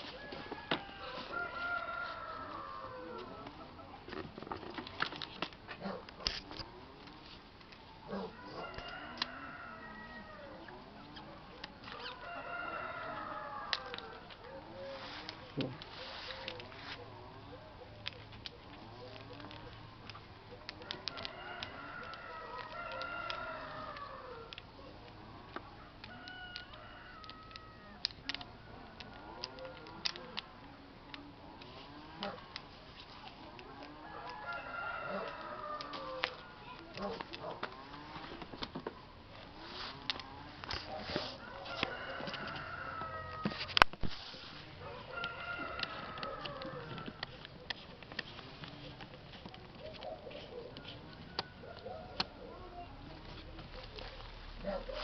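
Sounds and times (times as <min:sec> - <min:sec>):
rooster crowing: 0:00.0 - 0:03.5, 0:08.3 - 0:10.7, 0:12.0 - 0:14.9, 0:20.9 - 0:24.6, 0:26.0 - 0:28.1, 0:33.8 - 0:37.1, 0:40.2 - 0:43.7, 0:44.8 - 0:47.2
chickens clucking: 0:00.0 - 0:55.0.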